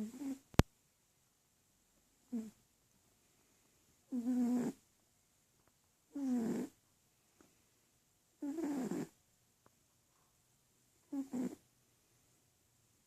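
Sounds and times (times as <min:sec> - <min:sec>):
cat snoring: 0:00.0 - 0:00.4, 0:02.3 - 0:02.6, 0:04.1 - 0:04.8, 0:06.1 - 0:06.8, 0:08.4 - 0:09.2, 0:11.1 - 0:11.6.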